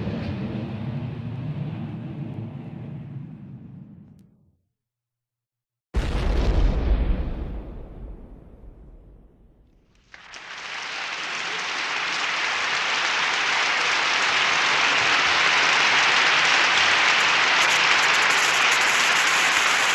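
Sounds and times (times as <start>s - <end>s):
explosion rumble: 6.0s - 10.0s
applause: 10.0s - 19.9s.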